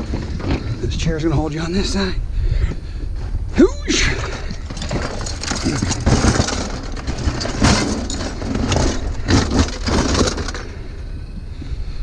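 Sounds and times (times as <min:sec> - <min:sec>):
steady low rumble: 0:00.0 - 0:12.0
scrap items clattering and scraping: 0:04.0 - 0:10.9.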